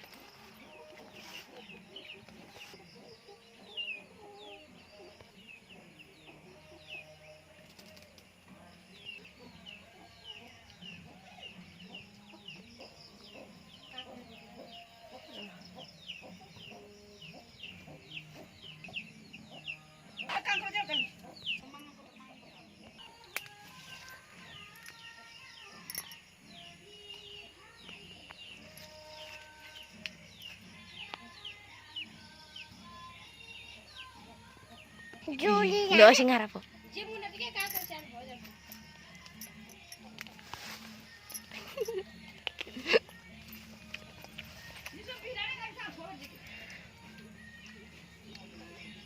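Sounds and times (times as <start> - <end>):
chicks cheeping: 0.5 - 7.4, 9.0 - 23.3.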